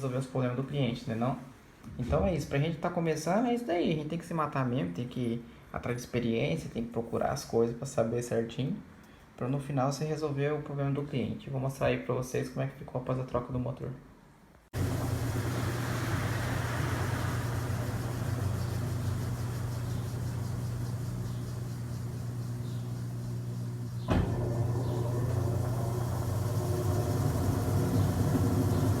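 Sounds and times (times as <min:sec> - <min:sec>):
washing machine motor hum: 0:14.8 - 0:29.0.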